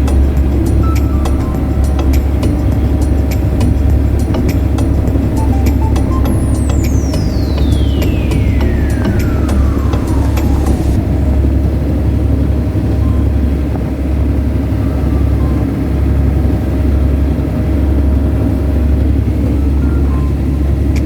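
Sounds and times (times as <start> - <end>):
boat engine droning: 0.0 - 21.0.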